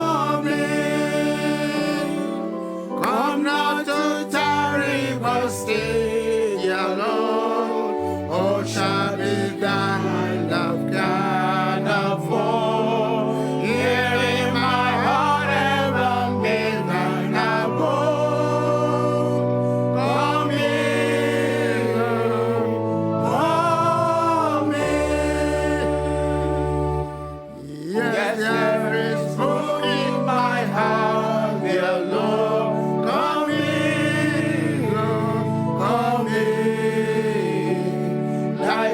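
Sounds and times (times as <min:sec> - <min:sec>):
gospel singing over chords: 0:00.0 - 0:38.9.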